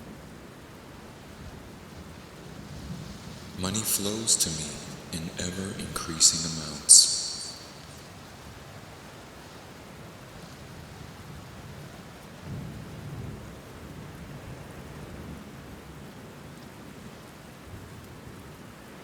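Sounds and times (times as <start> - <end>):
steady rainfall: 10.9 - 17.0.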